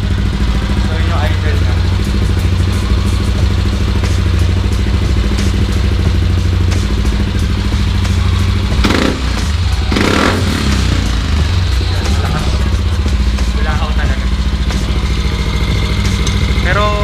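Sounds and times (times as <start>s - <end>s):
scooter engine idling: 0.0s - 17.0s.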